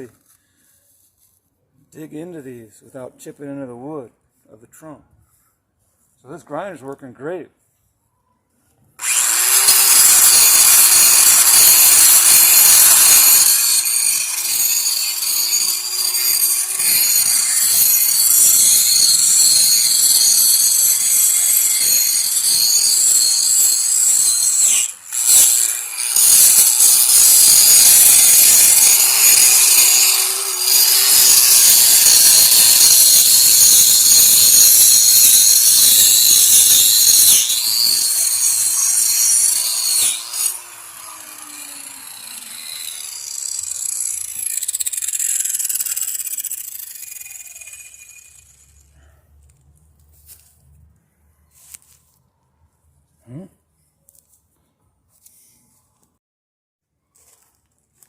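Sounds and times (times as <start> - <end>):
angle grinder cutting: 9.0 - 48.9.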